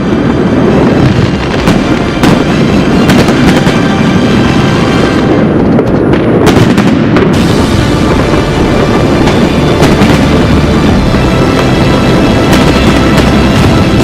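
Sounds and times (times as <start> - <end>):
distant fireworks rumble: 0.0 - 14.0
sharp fireworks bangs: 0.0 - 14.0.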